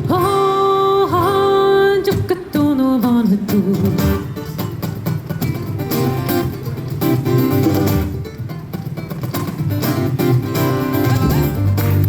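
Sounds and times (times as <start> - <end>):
strummed acoustic guitar: 0.0 - 12.0
live band playing: 3.8 - 12.0.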